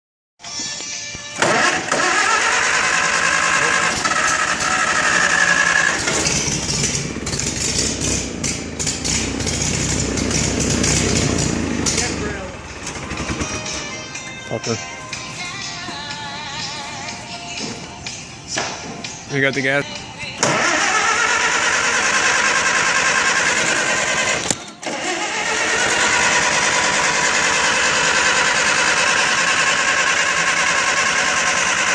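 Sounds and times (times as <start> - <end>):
engine starter cranking: 1.3 - 14.0, 20.4 - 31.9.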